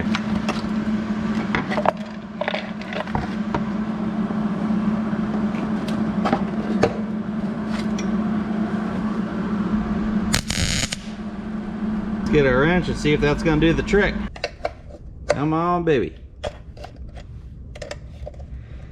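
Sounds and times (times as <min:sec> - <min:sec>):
welder humming and crackling: 0:08.9 - 0:14.3.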